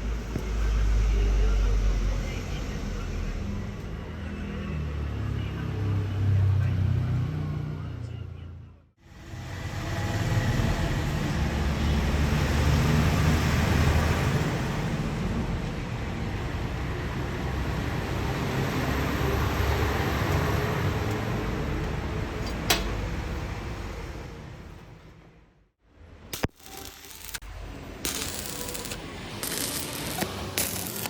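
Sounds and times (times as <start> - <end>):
welding arc crackling hiss: 26.4 - 31.0.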